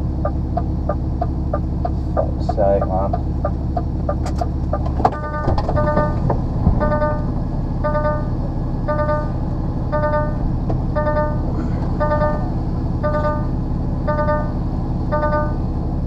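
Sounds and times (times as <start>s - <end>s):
diesel engine running: 0.0s - 16.0s
truck reversing alarm beeping: 0.0s - 16.0s
clunk: 4.1s - 7.2s.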